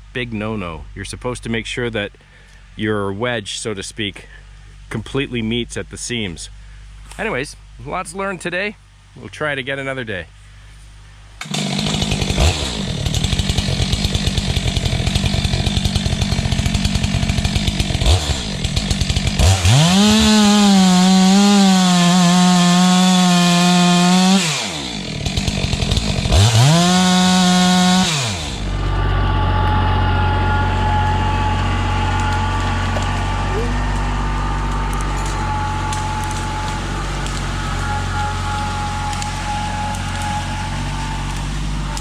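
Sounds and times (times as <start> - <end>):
chainsaw idling and revving: 11.4 - 42.0.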